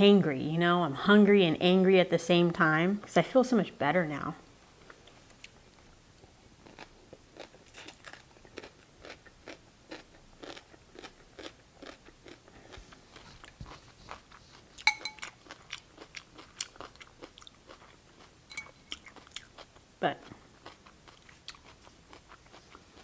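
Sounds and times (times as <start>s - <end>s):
chewing crunchy cucumber: 4.8s - 23.0s
sharp ringing clink: 14.8s - 15.3s, 18.5s - 18.9s.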